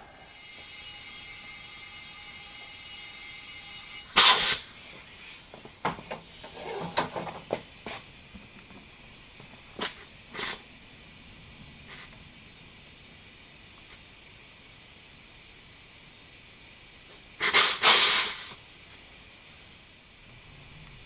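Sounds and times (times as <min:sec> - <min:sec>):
steady hum with tones: 0:00.0 - 0:17.4, 0:18.6 - 0:21.0
compressed air hissing: 0:04.1 - 0:08.2, 0:09.8 - 0:10.7, 0:11.8 - 0:15.3, 0:15.9 - 0:21.0.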